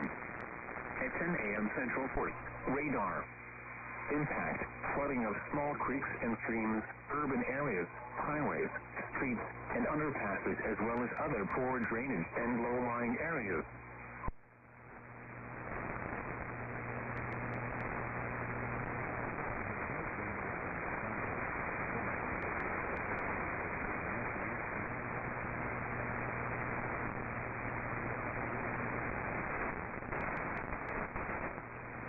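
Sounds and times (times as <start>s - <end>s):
radio static hiss: 0.0s - 32.0s
faint clicks: 17.0s - 18.0s, 22.4s - 23.3s, 30.1s - 31.2s.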